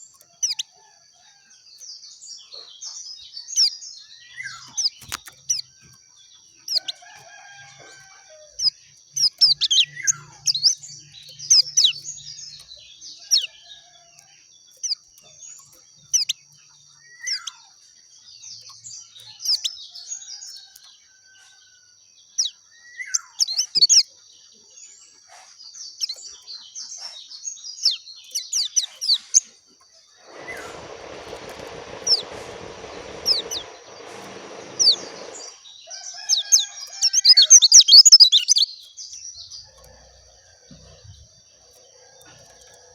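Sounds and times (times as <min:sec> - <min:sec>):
steady high-pitched hiss: 0:30.1 - 0:35.7
lower falling bird calls: 0:30.1 - 0:38.6.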